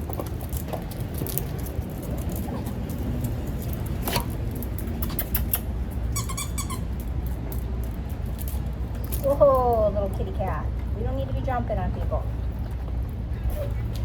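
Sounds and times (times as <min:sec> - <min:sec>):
puppy clicks and scuffles: 0:00.0 - 0:11.4, 0:12.4 - 0:14.0
puppy whimpering: 0:13.4 - 0:14.0.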